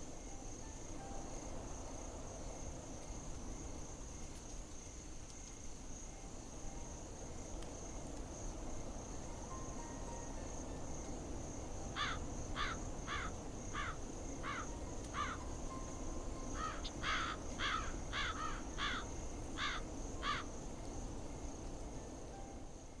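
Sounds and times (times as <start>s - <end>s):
crickets chirring: 0.0s - 23.0s
crow cawing: 12.0s - 15.4s, 16.6s - 20.5s.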